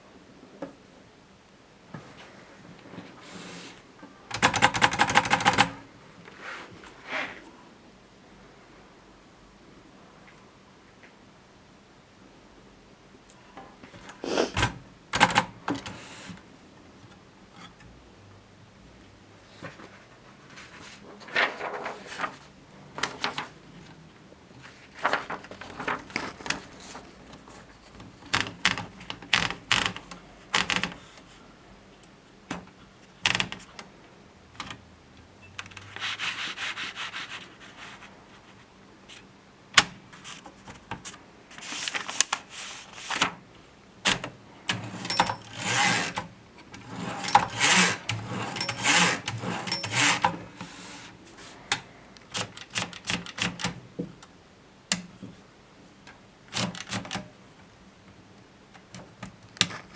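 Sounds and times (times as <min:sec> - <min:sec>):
typewriter clicks and clacks: 0:04.3 - 0:05.8, 0:15.2 - 0:15.8, 0:28.3 - 0:31.0, 0:44.1 - 0:50.4, 0:52.3 - 0:53.8, 0:56.5 - 0:57.3
typewriter rubbing and sliding: 0:35.8 - 0:38.1, 0:44.7 - 0:46.2, 0:46.8 - 0:51.6.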